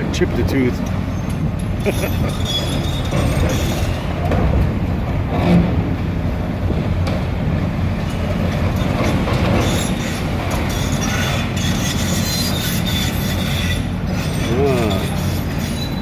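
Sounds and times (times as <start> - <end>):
excavator engine rumble: 0.0 - 16.0
steel tracks squealing and clanking: 0.0 - 16.0.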